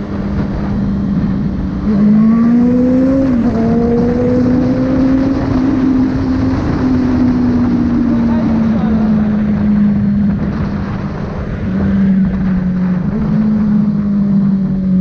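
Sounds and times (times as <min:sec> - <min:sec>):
motorcycle engine accelerating: 0:00.0 - 0:15.0.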